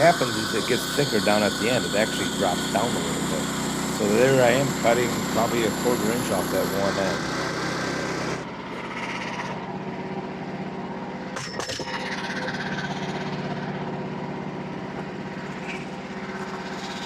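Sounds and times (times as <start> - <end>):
saw blade cutting wood: 0.0 - 9.6
bandsaw mill engine running: 0.0 - 17.0.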